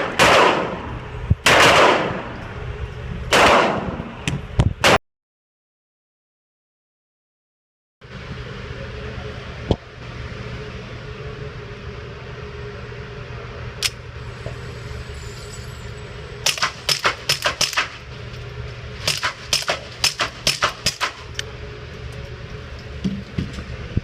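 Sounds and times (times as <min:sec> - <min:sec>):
suppressed pistol shots: 0:01.4 - 0:02.2, 0:16.4 - 0:18.0, 0:19.0 - 0:21.2.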